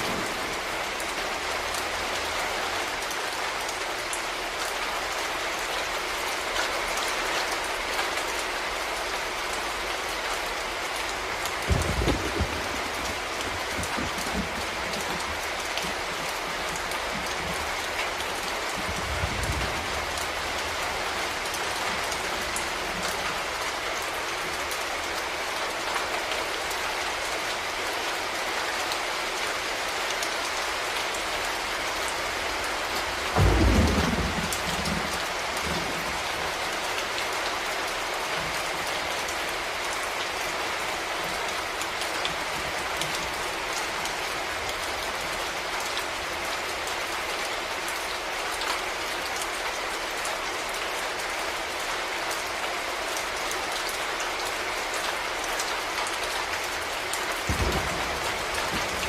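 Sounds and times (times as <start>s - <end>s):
steady rain falling: 0.0s - 59.0s
loud thunderclap: 11.6s - 15.4s, 33.3s - 36.3s, 57.4s - 59.0s
thunder rumbling: 11.6s - 23.4s, 33.2s - 36.6s, 57.4s - 59.0s.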